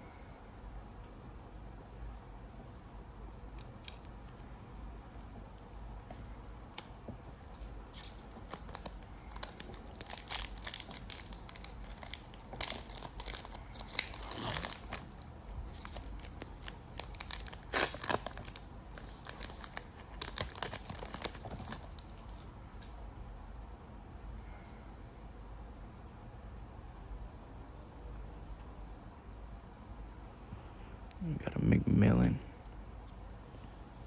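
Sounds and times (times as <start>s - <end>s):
foil wrapper tearing and crinkling: 7.6s - 22.5s.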